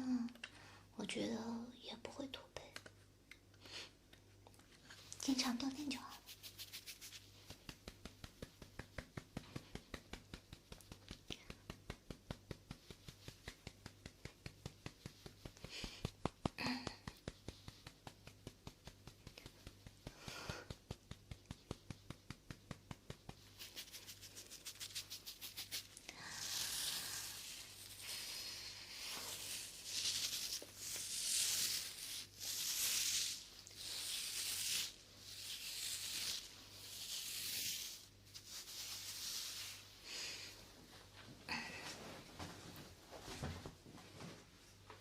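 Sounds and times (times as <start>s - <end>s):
scratchy rubbing: 5.4s - 15.9s, 20.8s - 39.9s.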